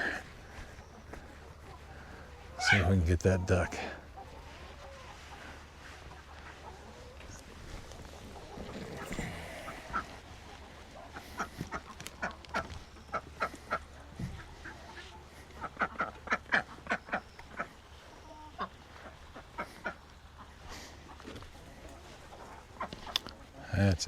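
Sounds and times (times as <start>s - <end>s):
ducks quacking: 0.0s - 23.8s.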